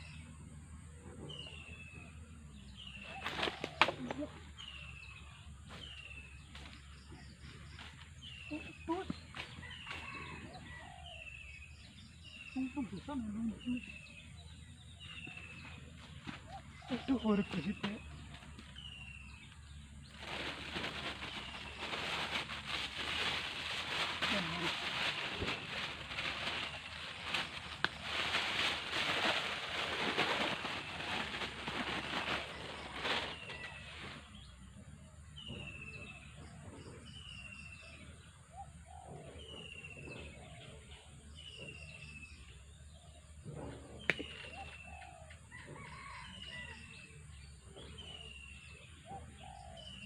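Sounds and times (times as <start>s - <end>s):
loud crackly rustling: 20.0s - 33.8s.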